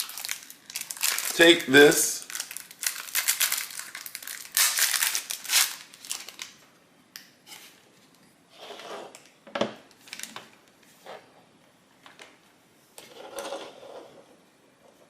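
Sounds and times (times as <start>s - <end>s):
packaging crinkling: 0.0s - 6.6s, 10.0s - 10.5s.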